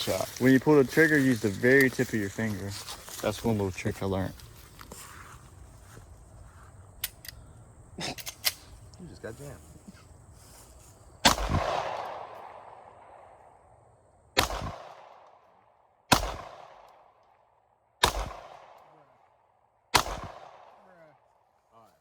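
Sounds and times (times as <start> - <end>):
pistol shots echoing: 11.2 - 13.3, 14.4 - 20.9.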